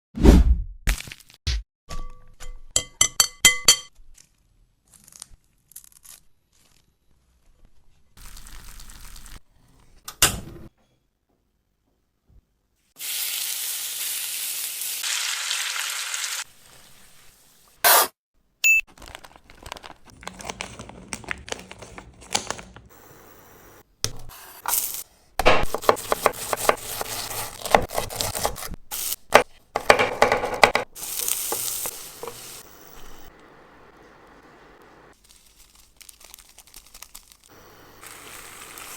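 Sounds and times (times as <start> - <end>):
steady hiss: 31.0 - 35.1.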